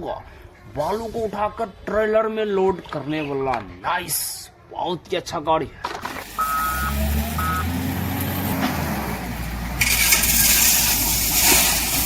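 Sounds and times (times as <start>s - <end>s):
vehicle engine rumble: 6.0s - 12.0s
double beep: 6.4s - 7.7s
loud steady hiss: 9.8s - 12.0s.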